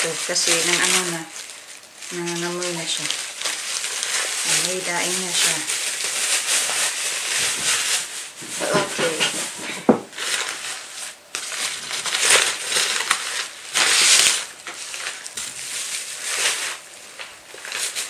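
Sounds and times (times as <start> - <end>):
packaging being torn open: 10.1 - 18.0.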